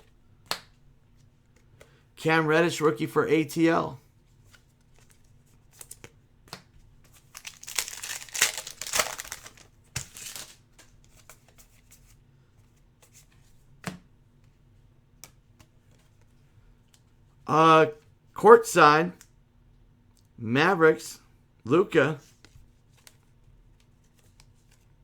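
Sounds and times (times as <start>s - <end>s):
wrapper tearing and crinkling: 7.2s - 10.6s.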